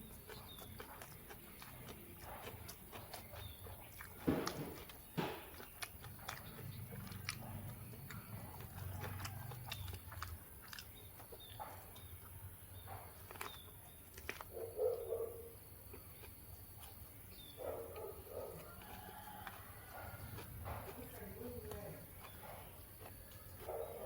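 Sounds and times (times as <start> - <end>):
chewing and biting food: 0.0 - 24.0.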